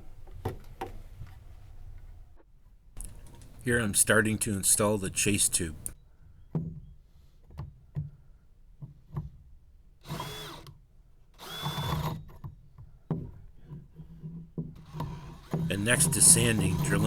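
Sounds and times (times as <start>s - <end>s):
power drill whining: 10.1s - 10.6s, 11.4s - 12.2s, 15.1s - 17.0s.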